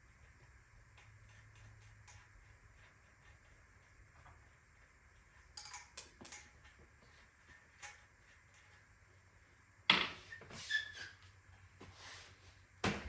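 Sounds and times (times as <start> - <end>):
bicycle parts and tools clinking: 5.5 - 6.8.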